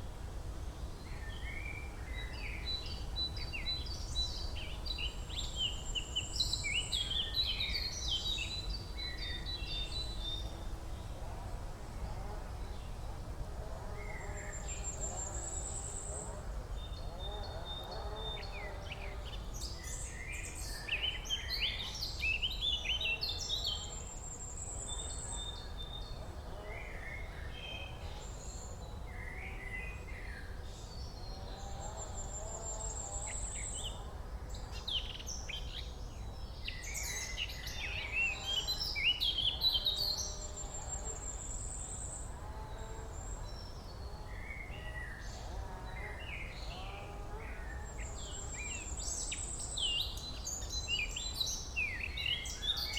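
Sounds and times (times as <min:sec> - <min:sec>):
songbirds singing: 0:14.2 - 0:52.9.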